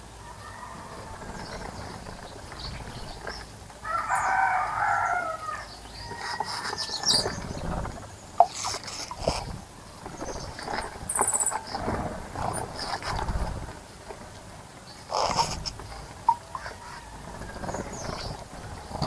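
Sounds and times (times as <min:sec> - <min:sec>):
small birds chirping: 0:00.0 - 0:19.0
rooster crowing: 0:00.1 - 0:01.6, 0:03.8 - 0:07.4, 0:16.5 - 0:17.7.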